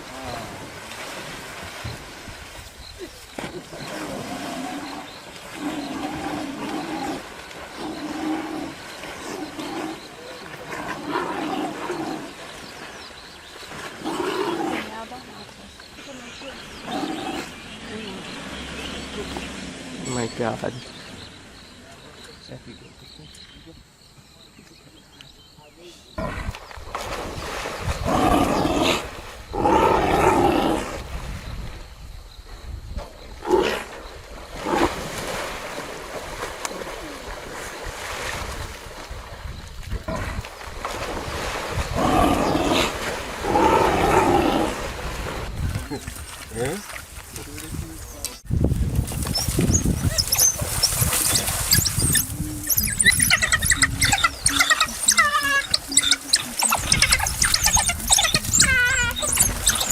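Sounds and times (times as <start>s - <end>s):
animal calling loudly: 50.0s - 59.9s.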